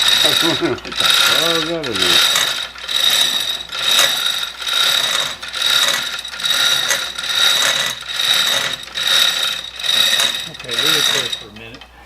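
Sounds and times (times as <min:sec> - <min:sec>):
chain hoist ratcheting and rattling: 0:00.0 - 0:12.0.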